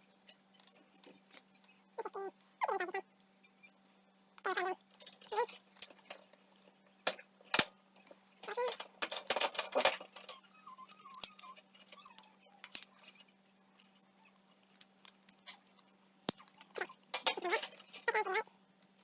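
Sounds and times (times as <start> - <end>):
metal parts clicking and knocking: 4.8 - 18.4.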